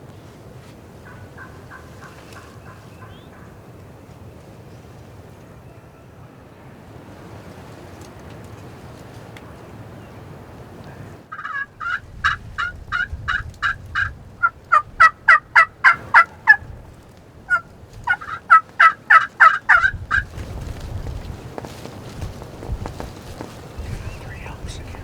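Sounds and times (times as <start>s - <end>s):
turkey yelping: 1.0s - 3.6s, 11.3s - 16.9s, 17.5s - 20.3s
wind noise rumbling: 11.7s - 25.0s.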